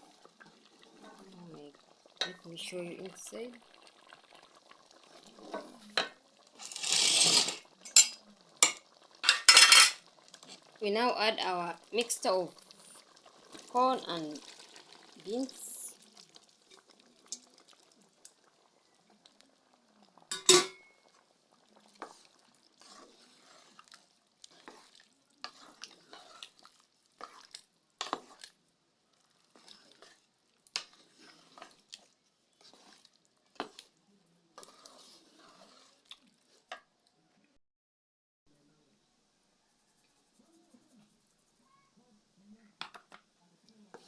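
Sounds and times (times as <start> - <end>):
spoon scraping in pot: 5.1 - 10.6, 20.2 - 28.6, 29.2 - 34.0, 34.6 - 36.8.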